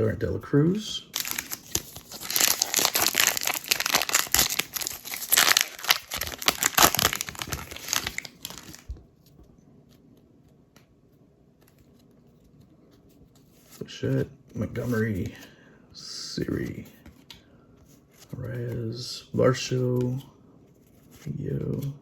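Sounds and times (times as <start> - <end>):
plastic wrapper tearing and crinkling: 1.1 - 8.9.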